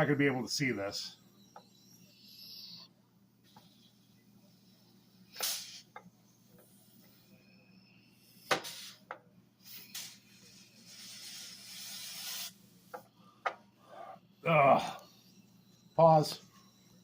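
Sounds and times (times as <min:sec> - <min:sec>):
air gun hissing: 0:05.3 - 0:06.0, 0:08.3 - 0:13.0.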